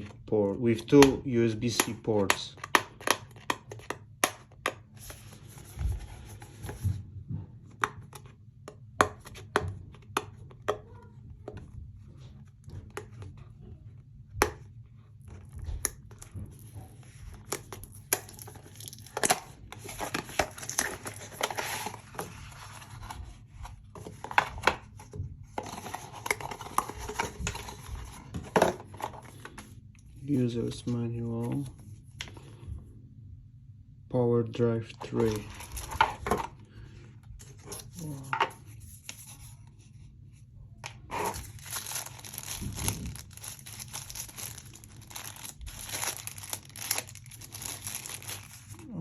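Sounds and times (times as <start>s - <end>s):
packaging clicks and taps: 0.8s - 4.9s
packaging tearing and crinkling: 17.4s - 22.7s, 41.0s - 49.0s.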